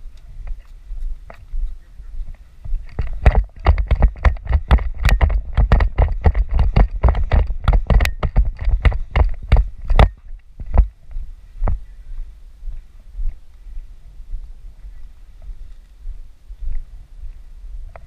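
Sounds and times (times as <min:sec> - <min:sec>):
loud thumps and knocks: 0:03.0 - 0:10.9.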